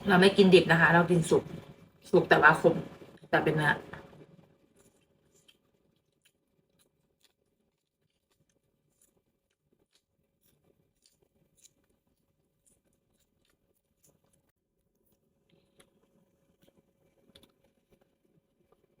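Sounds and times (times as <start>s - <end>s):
person chewing: 3.9s - 19.0s.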